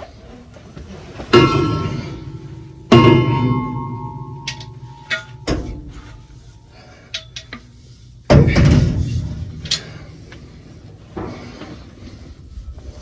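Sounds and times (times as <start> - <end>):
loud metal crash: 1.3 - 6.2
steel parts clanking: 1.3 - 10.2.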